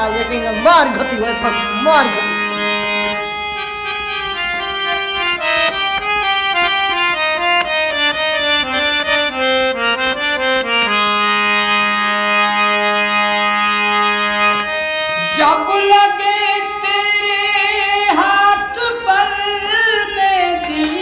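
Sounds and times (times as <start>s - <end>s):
free-reed instrument playing: 0.0s - 16.6s.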